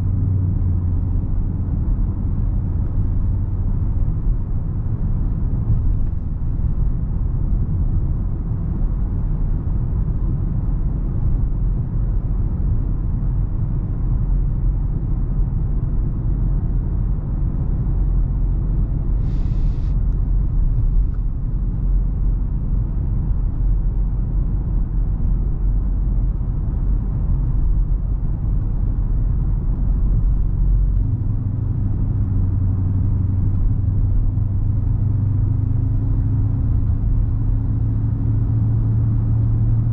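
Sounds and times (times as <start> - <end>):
car engine rumbling: 0.0 - 39.9
road noise: 0.0 - 39.9.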